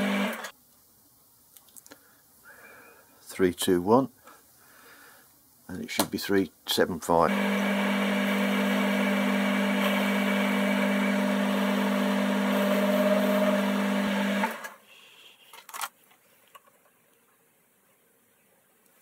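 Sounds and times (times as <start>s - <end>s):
lathe humming: 0.0s - 0.5s, 7.3s - 14.8s.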